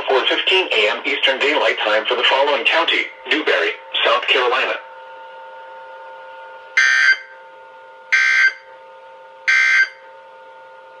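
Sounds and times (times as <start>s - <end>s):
faint steady hum: 0.0s - 5.0s.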